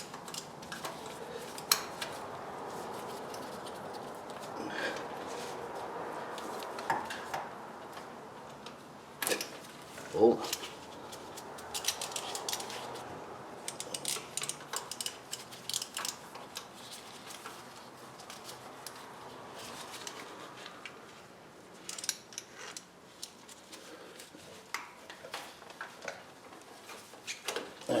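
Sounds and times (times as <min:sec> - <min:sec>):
hand tool clicking and scraping: 0:00.0 - 0:02.2, 0:10.4 - 0:13.0, 0:13.6 - 0:16.7.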